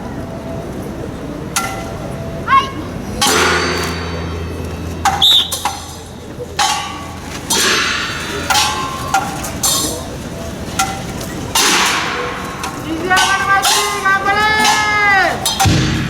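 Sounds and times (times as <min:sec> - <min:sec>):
men shouting: 0:11.6 - 0:15.6.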